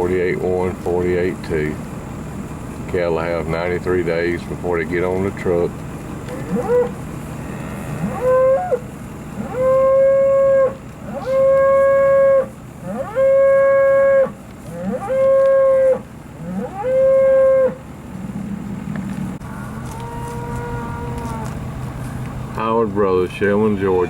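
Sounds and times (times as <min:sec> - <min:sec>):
calf bawling: 0:06.1 - 0:21.8.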